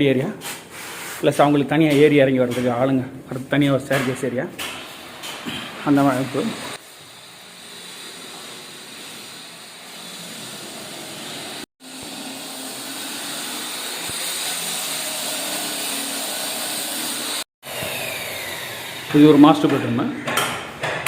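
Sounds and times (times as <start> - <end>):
power tool whining: 11.9 - 19.7.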